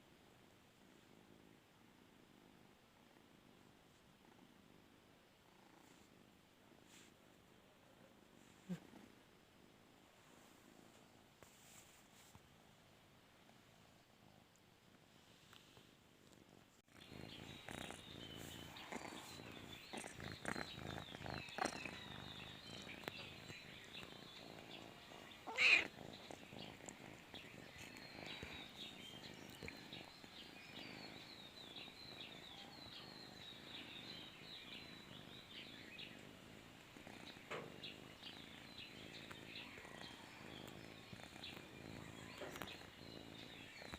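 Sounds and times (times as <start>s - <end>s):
cat purring: 0.0s - 43.9s
cat crying: 25.4s - 26.0s.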